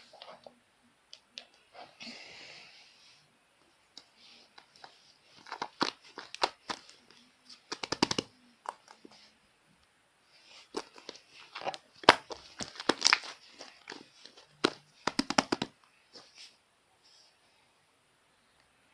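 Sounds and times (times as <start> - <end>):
slime squishing with crackly pops: 11.7 - 15.7.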